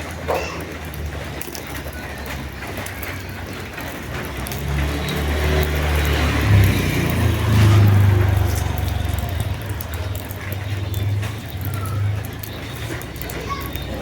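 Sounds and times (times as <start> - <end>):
vehicle passing on wet road: 0.0 - 14.0.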